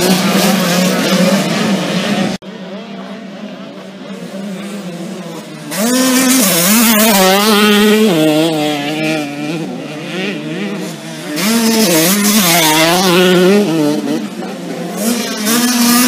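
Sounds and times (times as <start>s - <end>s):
motocross bike engines revving: 0.0s - 16.0s.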